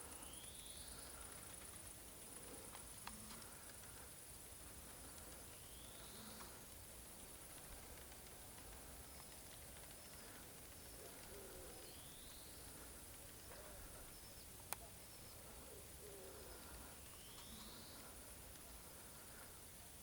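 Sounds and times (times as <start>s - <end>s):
pigeons cooing: 10.2s - 14.1s, 15.4s - 18.2s.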